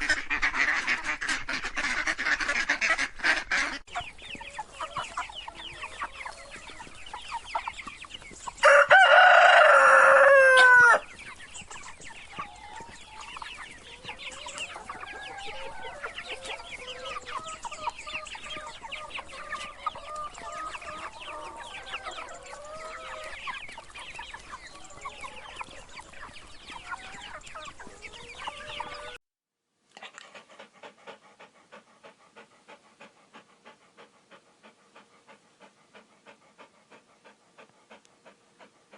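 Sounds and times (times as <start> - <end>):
chickens clucking: 0.0 - 29.2, 30.0 - 38.9
rooster crowing: 8.6 - 11.0
dog panting: 11.2 - 29.0, 30.0 - 38.9.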